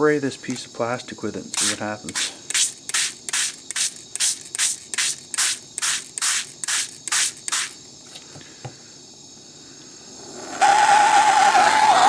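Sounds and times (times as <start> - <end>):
spray bottle squirts: 1.5 - 7.8
gas torch hissing: 1.6 - 7.8.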